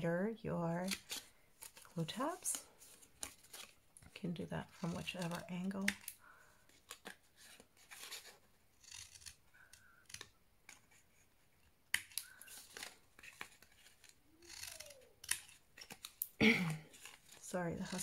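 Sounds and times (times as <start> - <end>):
scissors snipping cardstock: 4.7 - 6.2, 8.8 - 11.0, 11.9 - 18.0.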